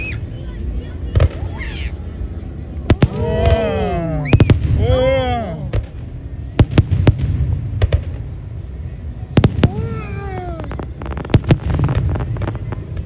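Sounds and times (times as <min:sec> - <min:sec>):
steady low rumble: 0:00.0 - 0:13.0
fireworks crackling: 0:05.7 - 0:13.0.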